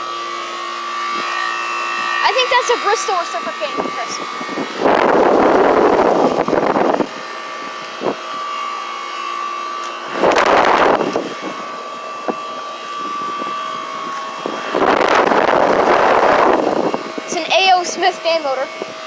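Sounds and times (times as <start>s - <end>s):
air conditioner compressor humming: 0.0s - 19.0s
condenser fan: 0.0s - 19.0s
wind rushes on microphone: 3.7s - 8.3s, 10.1s - 19.0s.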